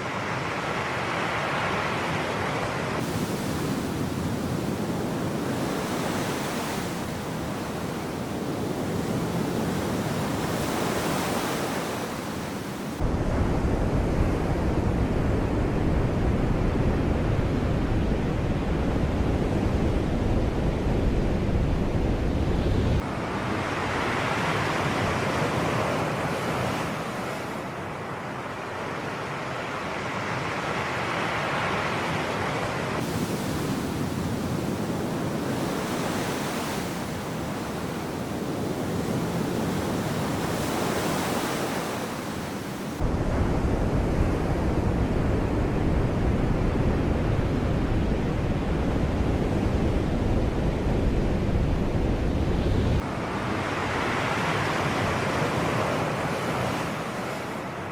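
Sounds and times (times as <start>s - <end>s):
sea waves breaking: 0.0s - 13.1s, 29.2s - 45.9s, 46.9s - 57.9s.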